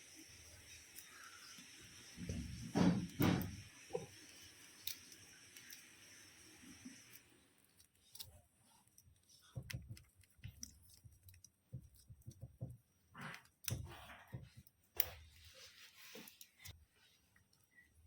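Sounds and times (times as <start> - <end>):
faint clicks and light knocks: 7.1 - 15.4.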